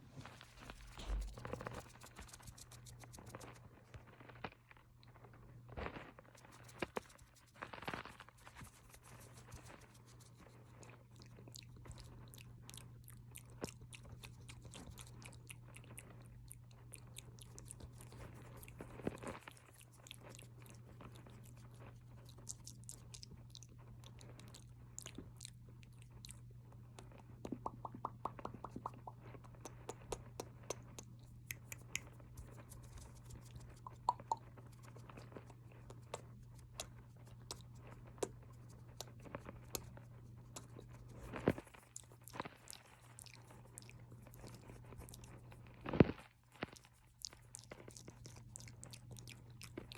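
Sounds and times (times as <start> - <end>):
steady low hum: 0.0 - 49.9
wet mouth clicks: 27.0 - 45.6.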